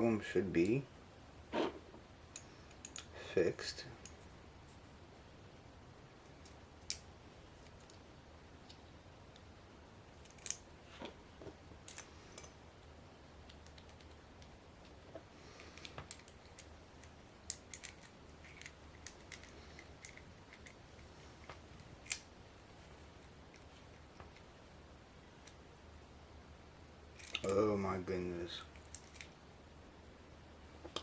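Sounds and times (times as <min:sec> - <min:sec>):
padlock parts clicking: 0:15.7 - 0:20.8.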